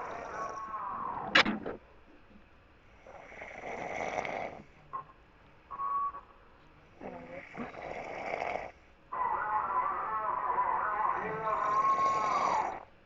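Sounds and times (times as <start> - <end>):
person snoring: 0.0 - 1.2, 3.1 - 4.7, 7.0 - 8.8, 10.7 - 12.9.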